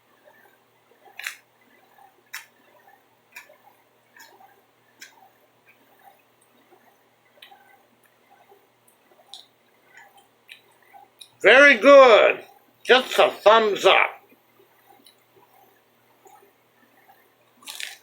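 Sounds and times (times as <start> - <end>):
mouth clicks and wet smacks chewing: 8.9 - 11.4, 17.6 - 18.0.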